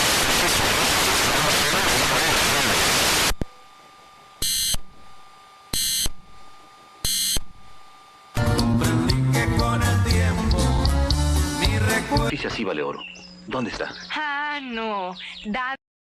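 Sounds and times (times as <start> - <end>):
buzzing data bursts: 0.0 - 10.3
loud static hiss: 0.0 - 14.0
faint steady hum: 0.0 - 15.8.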